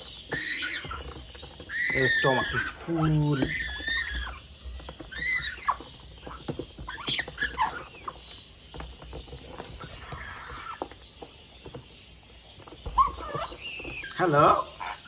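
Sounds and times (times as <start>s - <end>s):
parrot chick squeaky calls: 0.0s - 8.4s, 12.9s - 15.0s.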